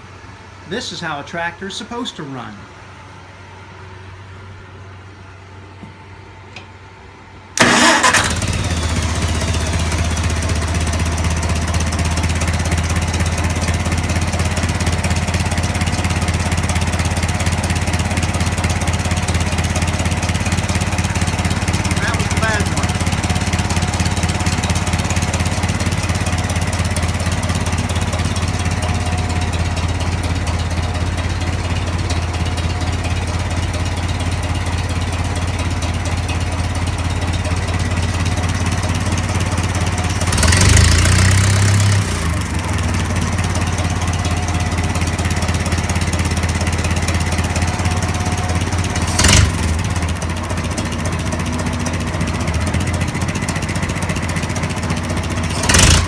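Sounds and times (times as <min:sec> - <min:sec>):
tractor engine idling: 0:07.6 - 0:56.0.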